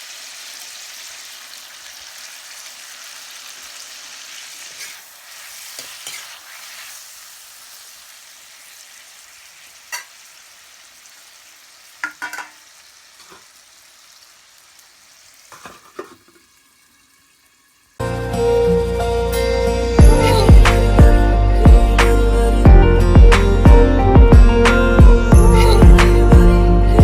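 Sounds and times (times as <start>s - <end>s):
pork sizzling in a pan: 0.0s - 18.0s
utensil knocking against pan: 12.0s - 12.6s.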